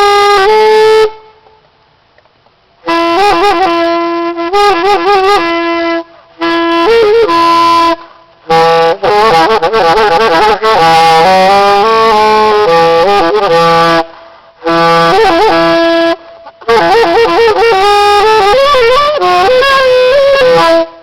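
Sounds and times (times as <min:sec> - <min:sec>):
saxophone melody: 0:00.0 - 0:01.6, 0:02.8 - 0:21.0.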